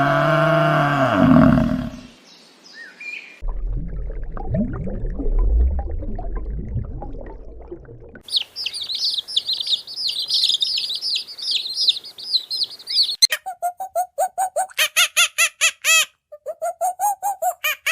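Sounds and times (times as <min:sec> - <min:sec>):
low rumbling animal sound: 0:00.0 - 0:02.1
small bird twittering: 0:08.3 - 0:14.6.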